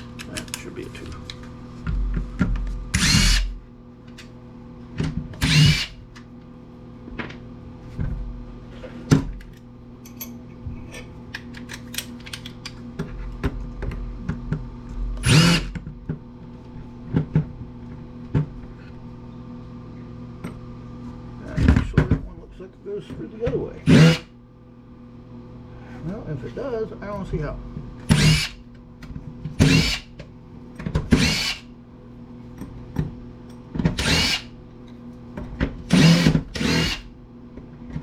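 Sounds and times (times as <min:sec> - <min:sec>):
steady low hum: 0:00.0 - 0:38.0
power screwdriver whirring: 0:03.0 - 0:03.5, 0:05.4 - 0:06.0, 0:15.2 - 0:15.7, 0:28.1 - 0:28.6, 0:29.6 - 0:30.1, 0:31.2 - 0:31.6, 0:34.0 - 0:34.5, 0:35.9 - 0:37.0.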